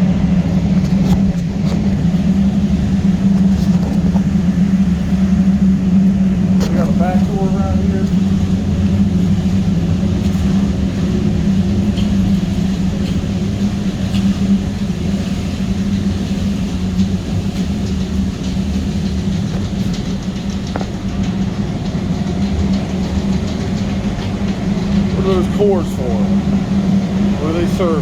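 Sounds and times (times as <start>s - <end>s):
low rumble: 0.0s - 28.0s
steam boiler machinery hum: 0.0s - 28.0s
steam hiss: 0.4s - 22.2s.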